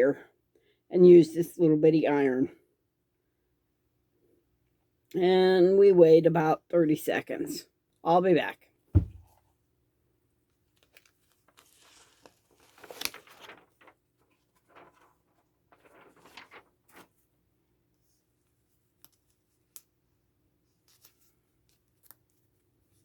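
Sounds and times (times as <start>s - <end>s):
soft rustling and crinkling: 10.4s - 17.4s, 20.5s - 23.0s.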